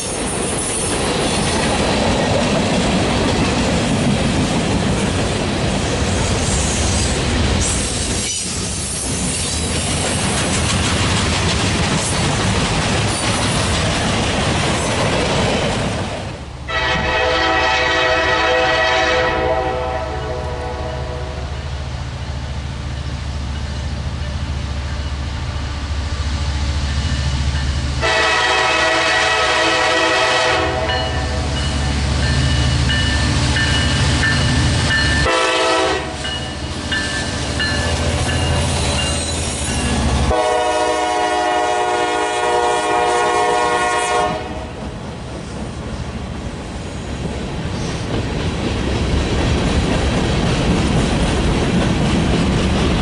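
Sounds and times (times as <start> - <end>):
passing train rumble: 0.0 - 53.0
locomotive air horn: 16.7 - 21.5, 28.0 - 31.5, 35.2 - 36.3, 40.3 - 44.8.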